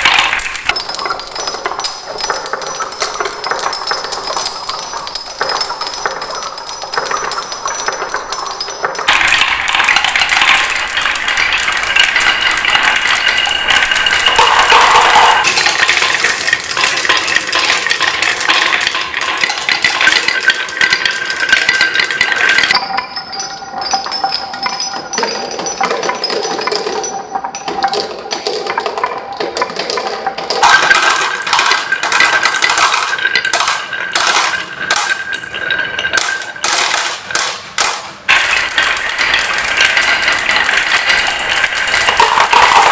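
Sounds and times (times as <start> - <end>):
marbles rolling and clattering: 0.0 - 42.9.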